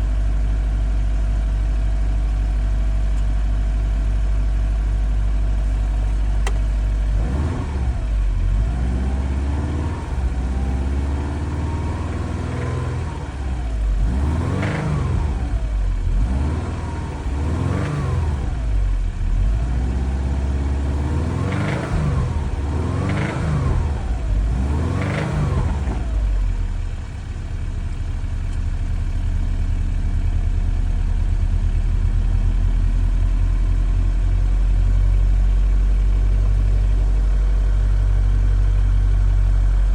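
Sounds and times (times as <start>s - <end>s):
car engine revving: 6.4s - 26.7s.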